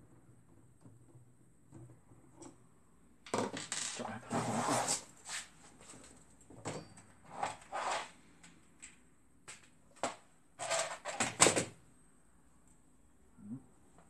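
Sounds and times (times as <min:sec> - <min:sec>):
tools clattering on a workbench: 0:05.8 - 0:08.1, 0:09.5 - 0:11.8.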